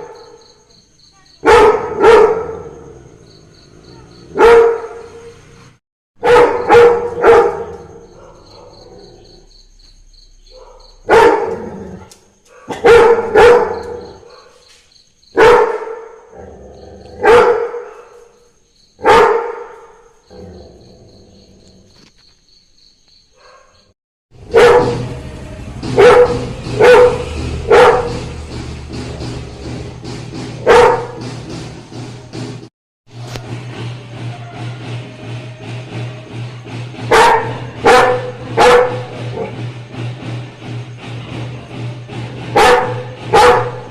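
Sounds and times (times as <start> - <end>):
dog barking: 1.4 - 3.0, 3.9 - 5.3, 6.2 - 9.3, 10.5 - 14.7, 15.3 - 16.3, 17.2 - 18.4, 19.0 - 20.1, 23.4 - 25.1, 26.0 - 28.2, 30.6 - 31.2, 37.1 - 39.6, 42.5 - 43.9.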